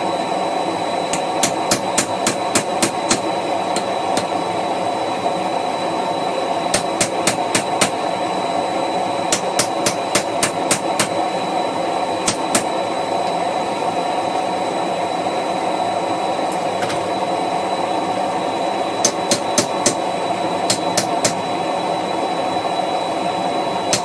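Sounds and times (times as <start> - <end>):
hammer striking chisel: 1.1 - 4.4, 6.7 - 8.0, 9.3 - 11.2, 12.2 - 12.7, 19.0 - 20.0, 20.7 - 21.4.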